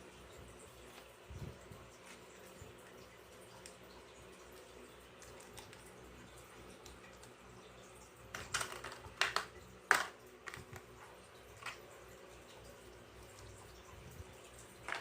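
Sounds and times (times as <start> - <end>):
toy plastic dishes clattering: 8.3 - 10.9.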